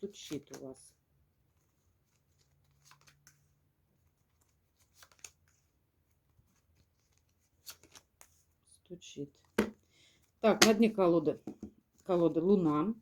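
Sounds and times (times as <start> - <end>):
cards being shuffled: 0.0 - 0.8, 1.6 - 8.6.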